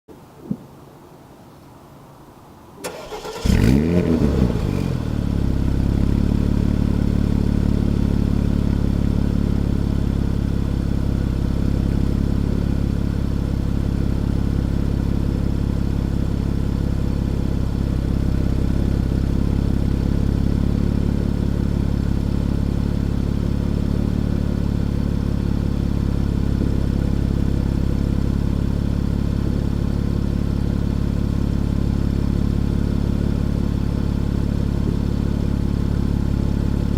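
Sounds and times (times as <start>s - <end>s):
engine cranking: 2.8s - 3.8s
car engine revving and idling: 2.9s - 36.9s.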